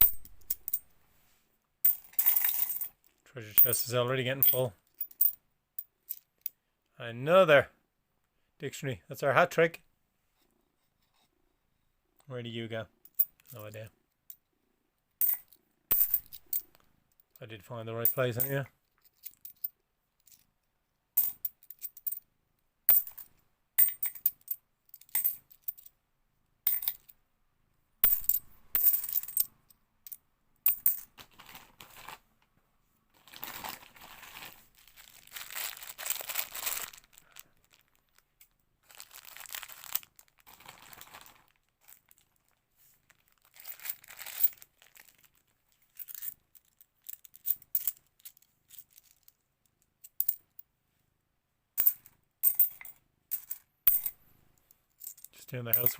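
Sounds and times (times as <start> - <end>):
coins clinking: 1.9 - 2.9, 15.2 - 16.7, 22.9 - 25.8, 26.7 - 27.1, 28.0 - 29.5, 30.7 - 31.1, 51.8 - 54.2, 55.0 - 55.9
coins shuffling: 1.9 - 2.9, 15.2 - 16.8, 22.9 - 25.9, 28.0 - 29.5, 30.7 - 32.2, 33.2 - 37.4, 43.5 - 45.2, 51.8 - 54.1, 55.0 - 55.9.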